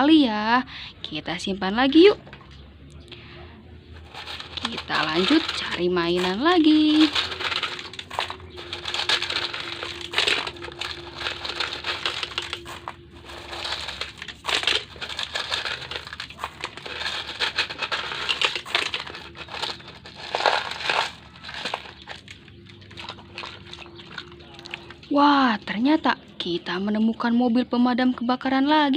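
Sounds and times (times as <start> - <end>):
hands rummaging through gravel: 4.0 - 25.1.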